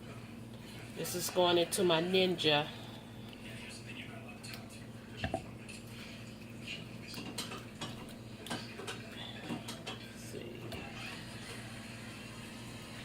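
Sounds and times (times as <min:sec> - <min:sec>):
steady low hum: 0:00.0 - 0:13.0
utensils and dishes clinking: 0:07.0 - 0:11.2.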